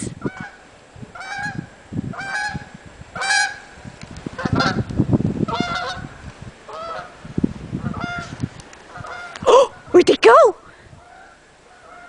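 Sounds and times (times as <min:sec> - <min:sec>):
ducks honking: 0:01.2 - 0:03.8, 0:04.4 - 0:04.9, 0:05.5 - 0:07.2, 0:07.8 - 0:09.9, 0:11.0 - 0:12.0.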